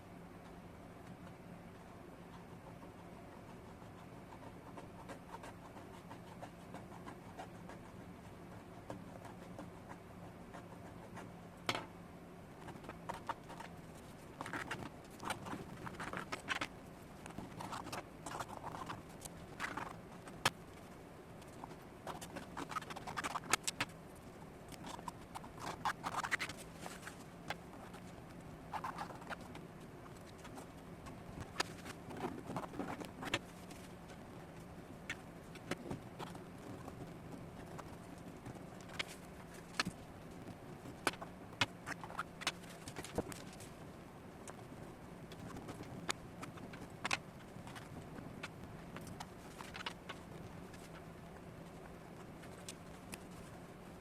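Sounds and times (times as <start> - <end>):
faint steady hum: 0.0 - 54.0
scratching or rubbing noises: 12.6 - 24.0, 24.8 - 34.2.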